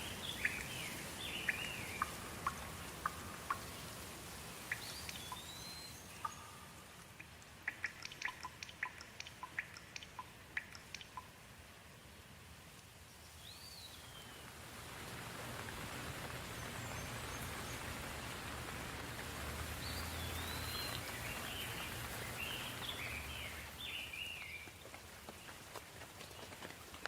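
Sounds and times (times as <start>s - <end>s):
bird chirping: 0.0s - 3.9s, 4.6s - 11.3s, 19.8s - 24.8s
soft rain: 0.0s - 27.0s.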